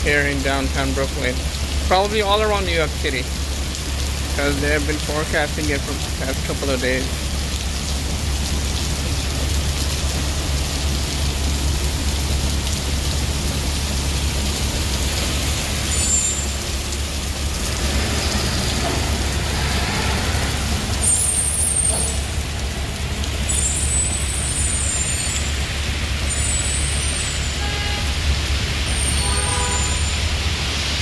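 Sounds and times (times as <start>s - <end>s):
rain hissing: 0.0s - 31.0s.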